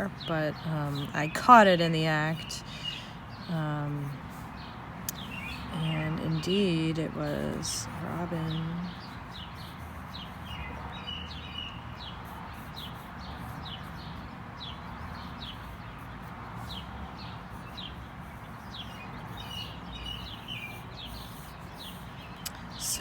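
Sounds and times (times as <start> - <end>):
high falling bird chirps: 16.6 - 22.8.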